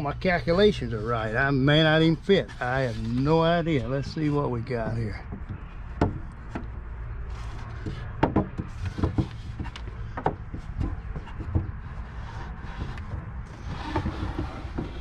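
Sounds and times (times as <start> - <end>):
wooden drawer knocking and scraping: 7.8 - 15.0.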